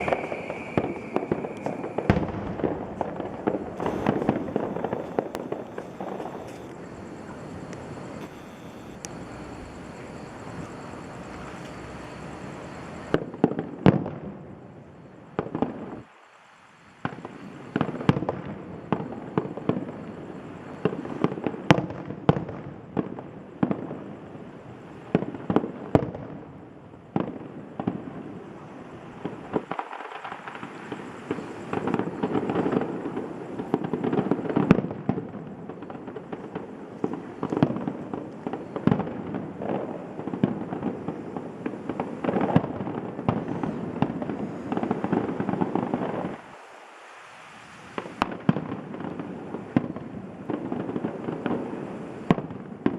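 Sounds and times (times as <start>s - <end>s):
firework shells bursting: 0.0s - 12.1s
fireworks crackling: 0.0s - 52.9s.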